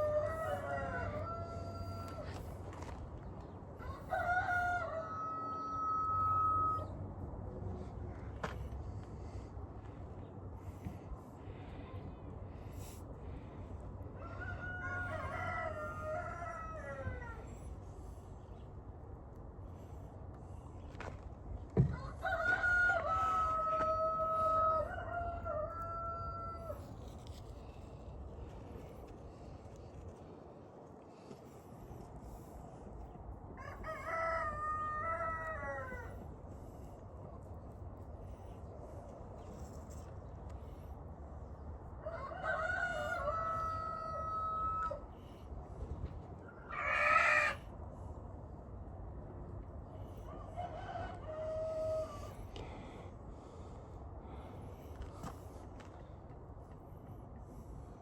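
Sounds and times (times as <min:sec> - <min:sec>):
rooster crowing: 0:00.0 - 0:02.5, 0:03.8 - 0:07.0, 0:14.2 - 0:17.5, 0:21.8 - 0:26.9, 0:33.6 - 0:36.2, 0:42.0 - 0:45.0, 0:46.7 - 0:47.6, 0:50.3 - 0:52.4.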